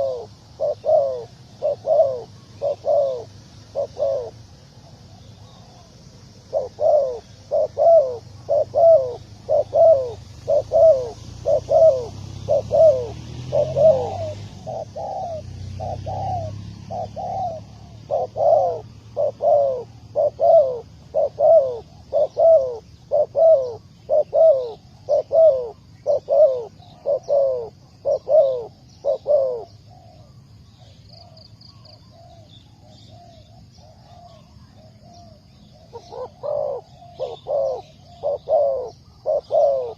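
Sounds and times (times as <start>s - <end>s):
dove cooing: 0.0s - 39.9s
small birds chirping: 0.0s - 39.9s.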